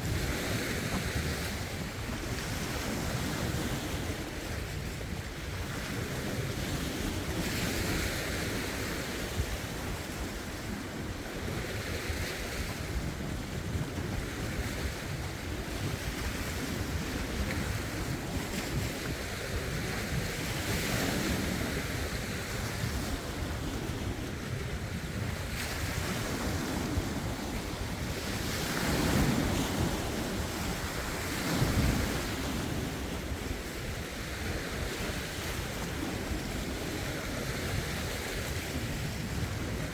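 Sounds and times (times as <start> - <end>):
waves washing over rocks: 0.0 - 39.9
wind buffeting microphone: 0.0 - 39.9.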